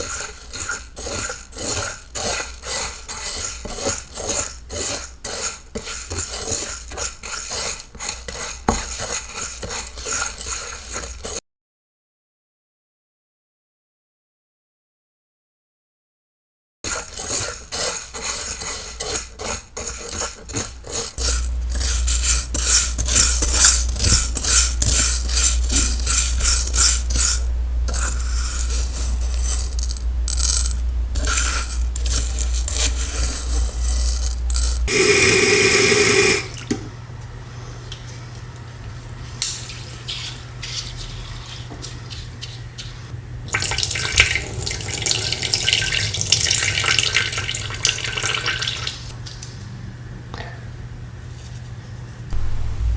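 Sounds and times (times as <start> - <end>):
steady low hum: 21.2 - 36.6, 52.3 - 52.9
water running and splashing: 43.5 - 49.1.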